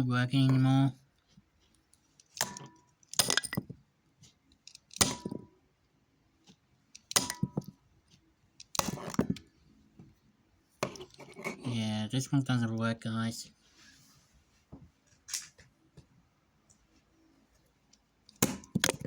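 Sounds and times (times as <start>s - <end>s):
hard objects knocking and clattering: 2.4s - 3.8s, 7.1s - 7.8s, 8.8s - 9.5s, 18.4s - 19.0s.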